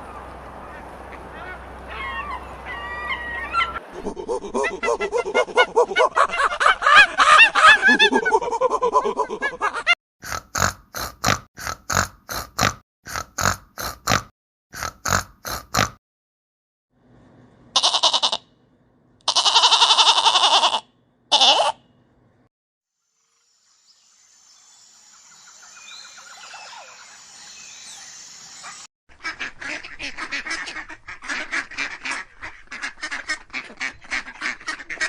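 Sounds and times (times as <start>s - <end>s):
farm animals calling: 0.0s - 8.2s, 17.8s - 18.4s, 19.3s - 21.8s
harsh animal cries: 1.3s - 8.2s, 17.8s - 18.4s, 19.3s - 21.8s
short grunting calls: 10.2s - 16.0s, 19.3s - 21.8s.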